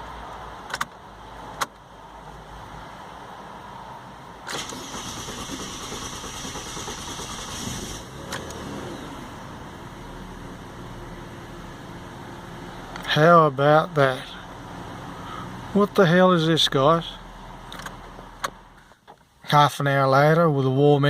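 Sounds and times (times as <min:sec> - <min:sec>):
starter motor grinding: 0:04.5 - 0:08.5
car engine running: 0:04.5 - 0:10.8.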